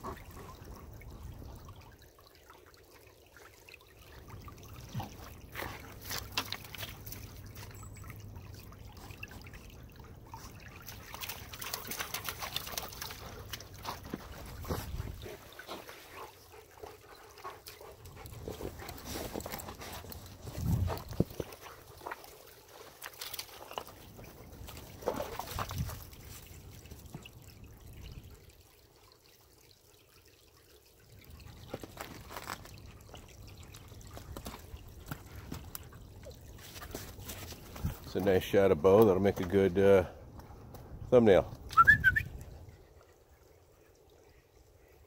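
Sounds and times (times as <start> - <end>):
wind on microphone: 20.5 - 21.4.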